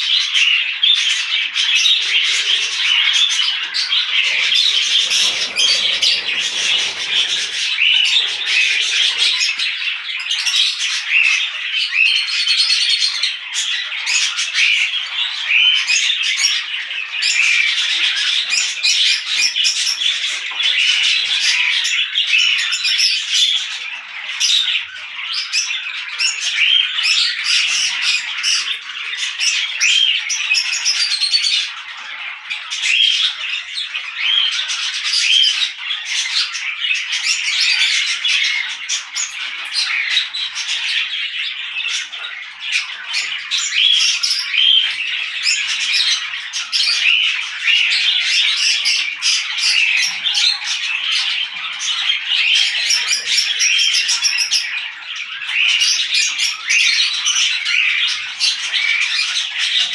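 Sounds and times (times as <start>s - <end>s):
parrots chattering and squawking: 0.0s - 11.1s, 34.1s - 59.9s.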